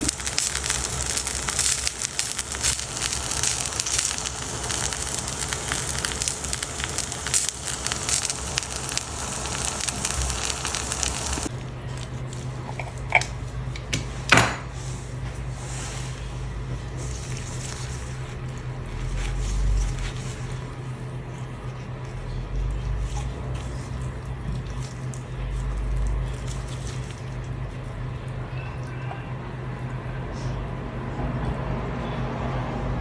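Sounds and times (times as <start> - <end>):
food sizzling in a pan: 0.0 - 11.5, 14.7 - 20.8
low steady hum: 0.0 - 33.0.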